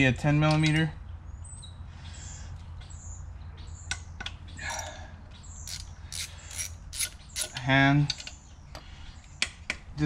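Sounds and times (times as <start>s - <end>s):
birds chirping: 0.0s - 10.0s
sharp metal clicks: 5.6s - 8.4s.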